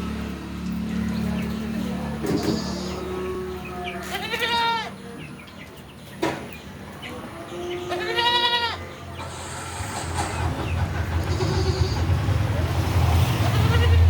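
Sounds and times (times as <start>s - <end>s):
goats bleating: 2.2s - 5.0s, 7.3s - 8.8s, 13.5s - 14.0s.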